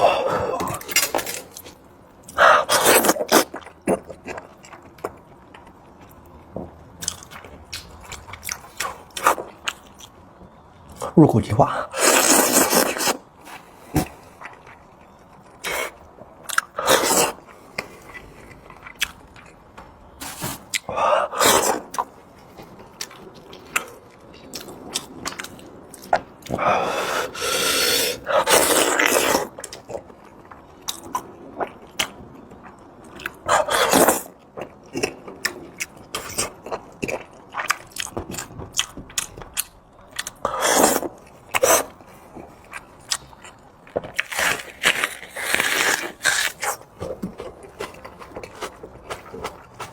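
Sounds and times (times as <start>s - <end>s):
biting or slurping: 2.6s - 4.4s, 11.9s - 14.6s, 15.6s - 18.2s, 26.5s - 30.0s, 33.2s - 34.3s, 40.2s - 42.0s, 44.1s - 49.9s
person chewing: 7.0s - 10.1s, 11.9s - 19.6s, 20.2s - 22.1s, 23.0s - 49.9s.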